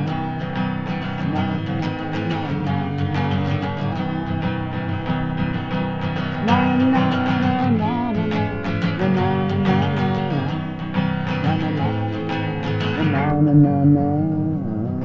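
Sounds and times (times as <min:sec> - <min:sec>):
acoustic guitar strumming: 0:00.0 - 0:15.0
held wavering melody line: 0:13.0 - 0:15.0.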